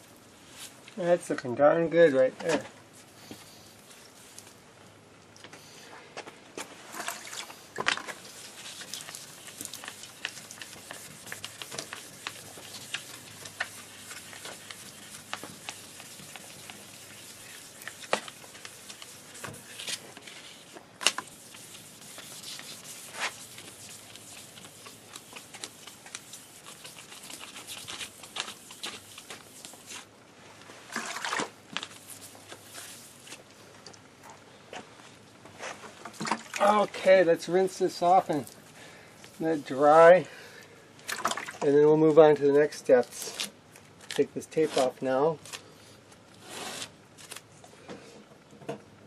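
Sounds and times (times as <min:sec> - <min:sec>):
sandpaper rubbing on plastic: 0:08.1 - 0:30.0.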